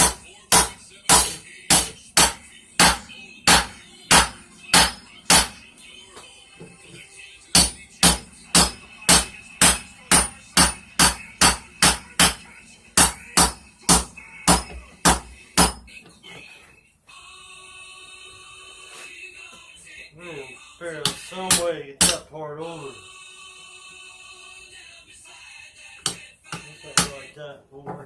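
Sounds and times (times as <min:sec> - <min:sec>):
hammer striking hot metal on anvil: 0:00.0 - 0:05.6, 0:07.6 - 0:15.8, 0:21.0 - 0:22.2.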